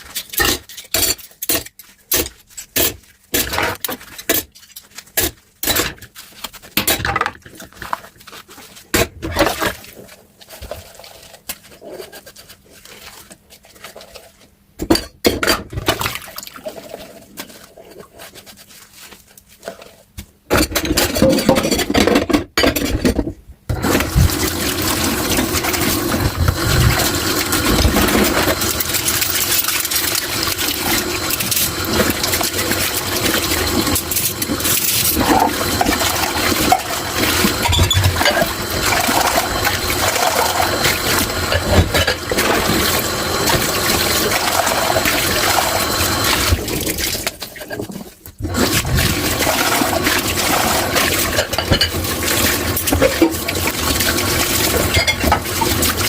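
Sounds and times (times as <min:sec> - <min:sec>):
tap water running into sink: 0:23.7 - 0:47.4, 0:48.5 - 0:56.0.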